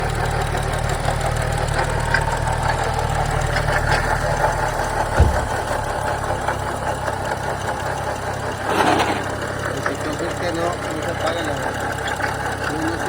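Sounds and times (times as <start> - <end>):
car engine idling hum: 0.0 - 13.0
loud low thump: 5.1 - 6.0.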